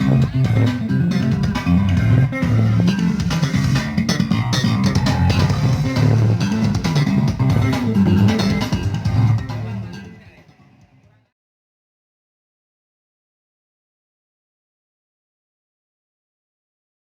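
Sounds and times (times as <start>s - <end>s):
bass-heavy music with guitar: 0.0s - 10.2s.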